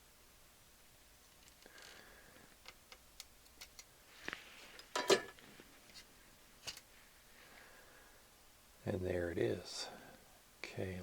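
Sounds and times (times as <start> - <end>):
small tools clicking and tapping: 2.6 - 3.9.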